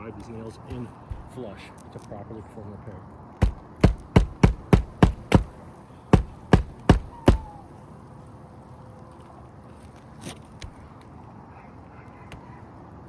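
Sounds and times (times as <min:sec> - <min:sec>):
hatchet hammering roofing nails: 0:03.4 - 0:07.6.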